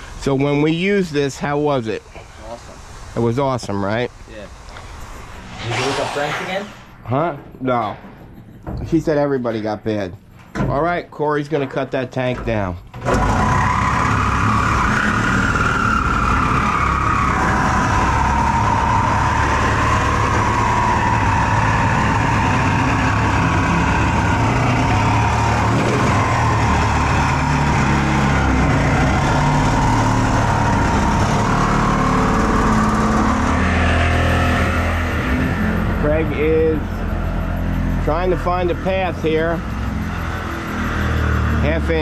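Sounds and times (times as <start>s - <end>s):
harsh metal cutting noise: 4.9s - 10.3s, 11.7s - 42.0s
power tool motor whine: 13.0s - 35.8s.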